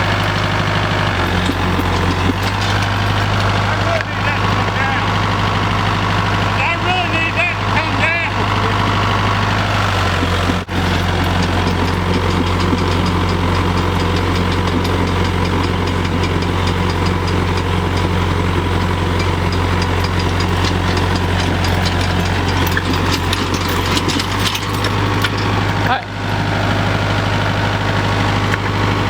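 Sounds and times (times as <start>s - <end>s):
faint regular ticking: 0.0s - 5.7s, 9.9s - 25.9s
engine idling: 0.0s - 29.0s.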